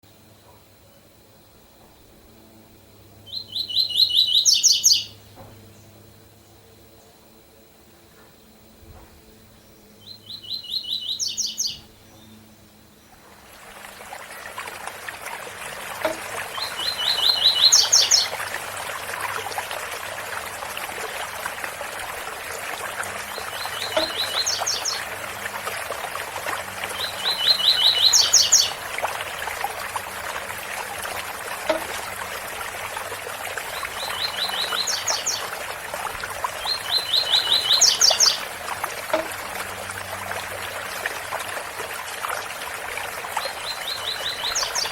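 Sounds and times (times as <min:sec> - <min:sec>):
bird singing: 0:03.3 - 0:06.0, 0:09.6 - 0:12.5, 0:16.0 - 0:18.4, 0:23.2 - 0:25.1, 0:26.9 - 0:28.8, 0:33.8 - 0:35.5, 0:36.6 - 0:38.5, 0:43.6 - 0:44.9.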